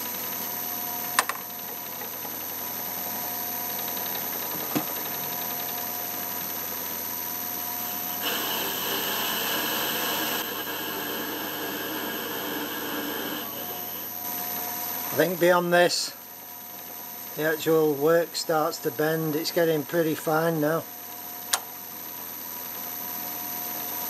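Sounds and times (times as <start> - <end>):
metal lathe motor whine: 0.0 - 16.2
cutter hissing into steel: 7.9 - 14.2.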